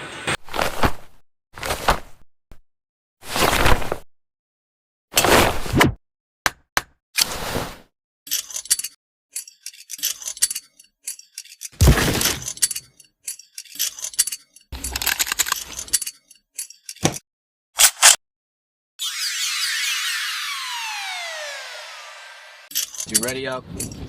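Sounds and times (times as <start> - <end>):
loud falling swoosh: 19.0 - 22.7.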